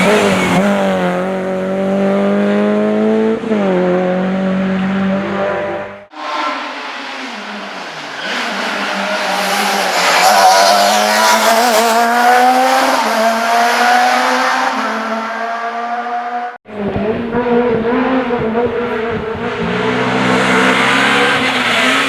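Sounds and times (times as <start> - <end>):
rally car engine under hard load: 0.0 - 22.0
tyres squealing and skidding: 6.1 - 11.8, 19.6 - 22.0.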